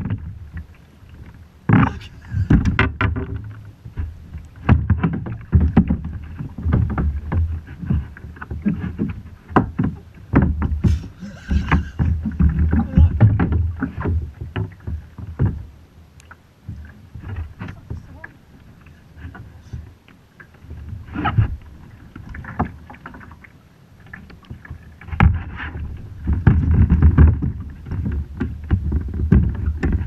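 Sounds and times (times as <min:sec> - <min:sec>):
water splashing and sloshing: 0:00.0 - 0:30.0
knocks on kayak hull: 0:01.7 - 0:07.6, 0:08.6 - 0:15.6.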